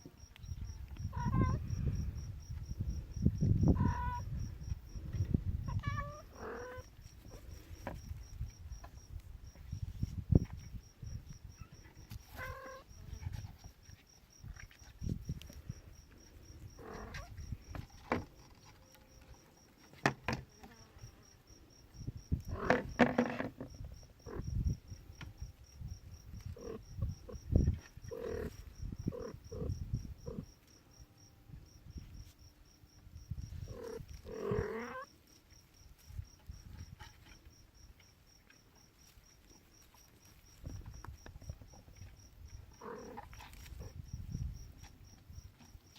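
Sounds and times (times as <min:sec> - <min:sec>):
kittens mewing: 0:01.0 - 0:01.8, 0:03.7 - 0:04.3, 0:05.6 - 0:06.9.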